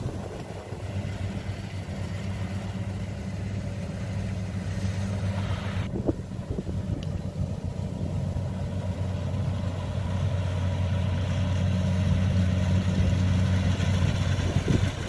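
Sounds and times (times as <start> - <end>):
diesel engine droning: 0.0 - 15.0.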